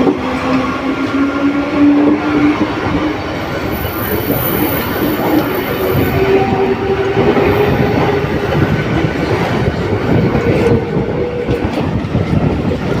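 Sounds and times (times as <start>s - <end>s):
train rumbling on tracks: 0.0s - 13.0s.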